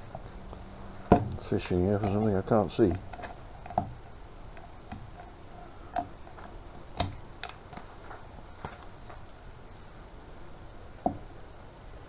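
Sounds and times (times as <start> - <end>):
tool tapping metal parts: 1.1 - 5.4.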